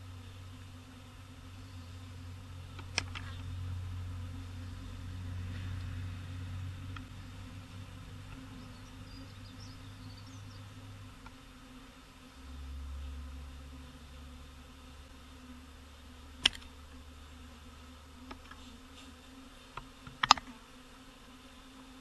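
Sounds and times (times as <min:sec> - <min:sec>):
bees buzzing: 0:00.0 - 0:22.0
sharp click: 0:02.8 - 0:03.3, 0:16.4 - 0:16.7, 0:19.8 - 0:20.5.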